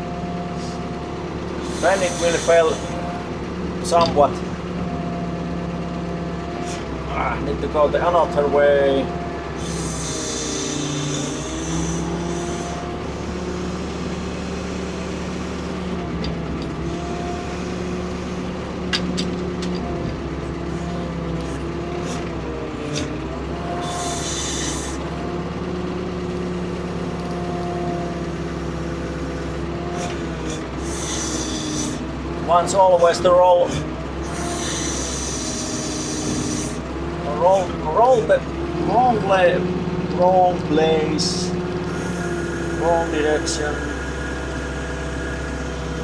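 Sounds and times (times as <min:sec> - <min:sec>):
excavator diesel engine running: 0:00.0 - 0:46.0
hydraulic whine: 0:00.0 - 0:46.0
hiss bursts: 0:01.6 - 0:03.0, 0:09.6 - 0:15.4, 0:23.8 - 0:25.0, 0:30.8 - 0:32.0, 0:34.2 - 0:36.8.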